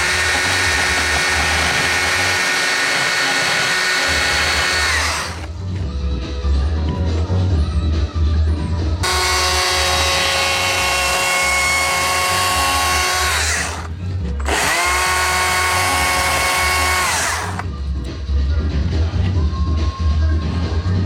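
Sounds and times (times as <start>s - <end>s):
power tool high whine: 0.0s - 5.5s, 9.0s - 17.7s
background music with heavy bass: 17.1s - 21.0s.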